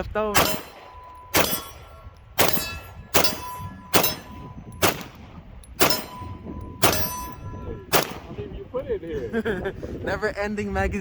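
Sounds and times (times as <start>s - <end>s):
pistol shots with ringing: 0.4s - 8.5s.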